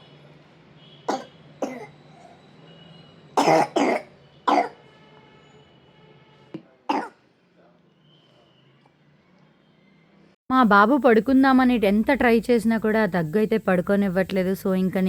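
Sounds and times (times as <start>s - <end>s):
boy coughing: 1.1s - 1.9s, 3.4s - 4.8s, 6.9s - 7.2s.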